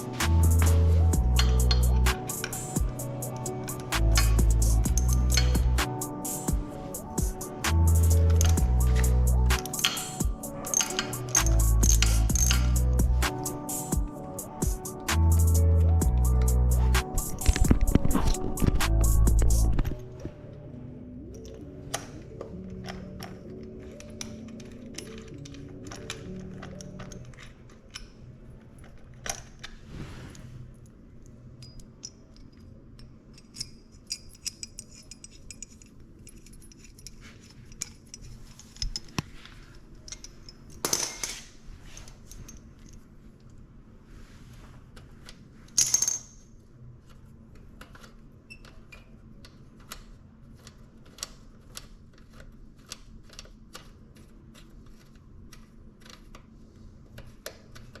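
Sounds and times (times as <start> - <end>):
metal parts clinking: 0.0 - 15.1, 16.3 - 20.0, 21.4 - 29.8, 31.6 - 43.0, 45.7 - 46.5
high metallic jingle: 0.0 - 19.8.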